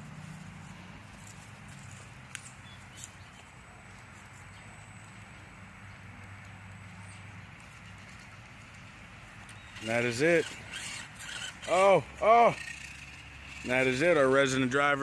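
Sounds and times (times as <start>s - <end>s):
toy car motor whirring: 9.5s - 14.4s.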